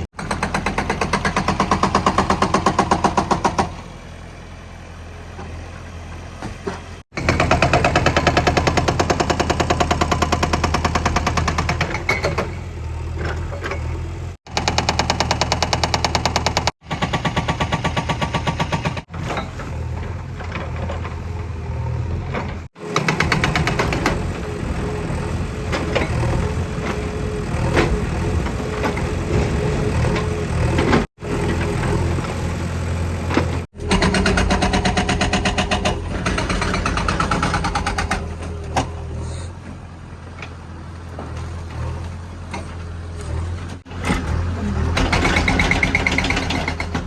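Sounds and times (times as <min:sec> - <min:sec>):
diesel engine running hard: 0:19.5 - 0:47.0
knocks and clunks: 0:33.3 - 0:47.0.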